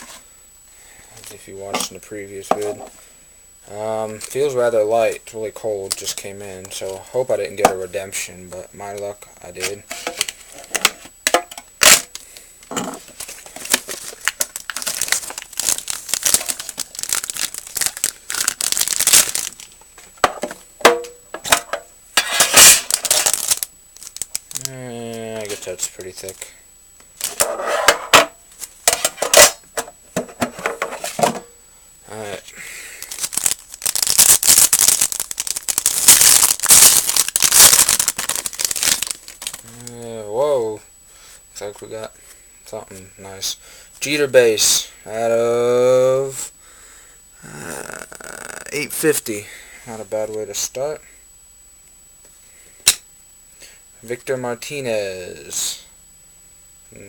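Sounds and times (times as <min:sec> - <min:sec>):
wrapping crackling and rustling: 0:13.0 - 0:20.2, 0:22.2 - 0:26.5, 0:33.0 - 0:40.0
wrapping ripping: 0:13.2 - 0:19.8, 0:22.6 - 0:24.8, 0:33.0 - 0:40.0.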